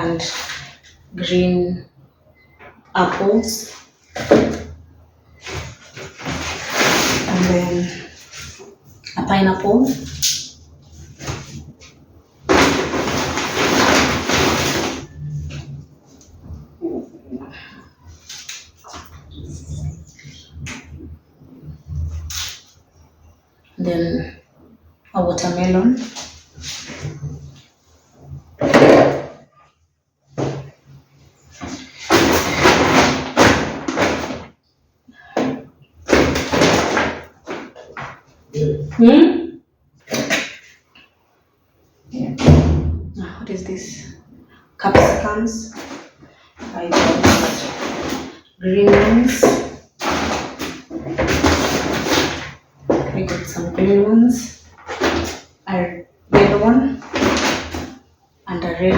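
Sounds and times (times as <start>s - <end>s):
groceries rustling and knocking: 3.1s - 9.0s, 11.0s - 16.6s, 30.3s - 34.6s, 35.2s - 38.6s, 44.8s - 55.6s, 56.3s - 58.9s
plastic bag rustling and crinkling: 5.4s - 8.8s, 12.4s - 15.5s.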